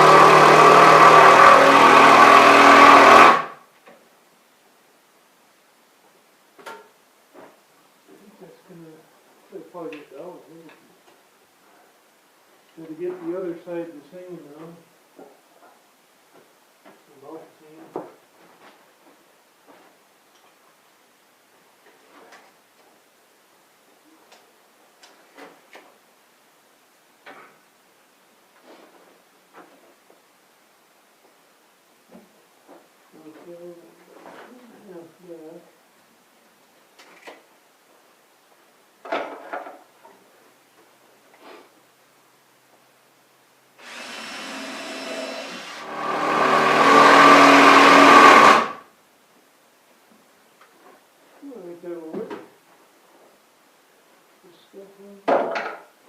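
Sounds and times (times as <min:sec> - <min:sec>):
electric power tool motor: 0:00.0 - 0:03.6, 0:43.8 - 0:48.8
low background hiss: 0:03.5 - 0:45.8, 0:48.7 - 0:56.0.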